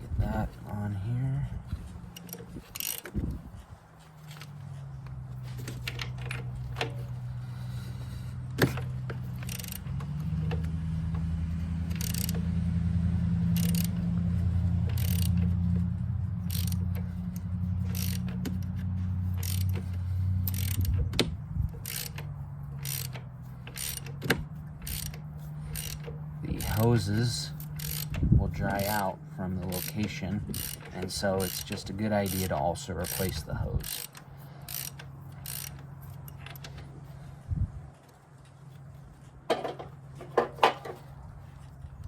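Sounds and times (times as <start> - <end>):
steady low hum: 0.0 - 42.0
ratchet clicking: 2.1 - 3.3, 5.6 - 12.7, 13.4 - 36.9.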